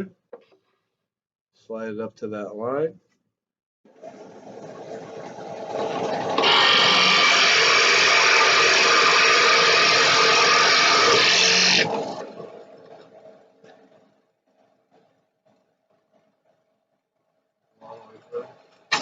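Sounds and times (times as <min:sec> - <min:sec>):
drill press boring into wood: 0:05.9 - 0:12.1.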